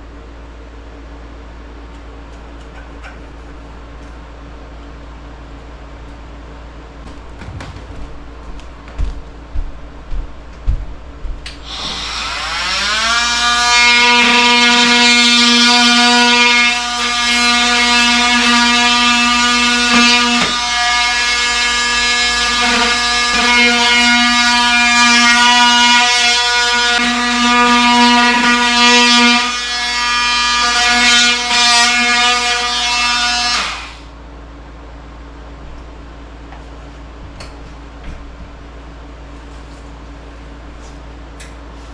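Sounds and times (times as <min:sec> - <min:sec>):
low thumps: 0:07.0 - 0:11.5
power tool motor whining: 0:11.6 - 0:34.1.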